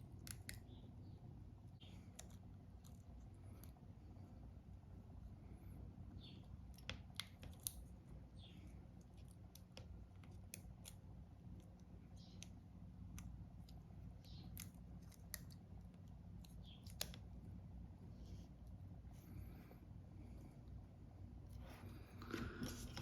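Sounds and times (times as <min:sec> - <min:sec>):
steady low hum: 0:00.0 - 0:23.0
soft scrapes: 0:21.5 - 0:23.0.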